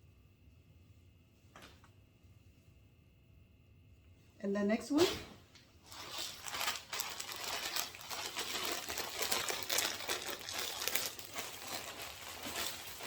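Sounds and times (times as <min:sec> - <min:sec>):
packaging crinkling and rustling: 0:05.8 - 0:13.0.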